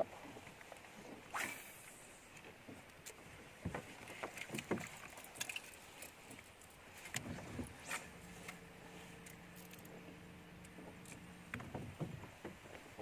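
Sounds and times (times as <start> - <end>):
boat knocking and clicking: 2.5 - 5.0, 9.2 - 13.0.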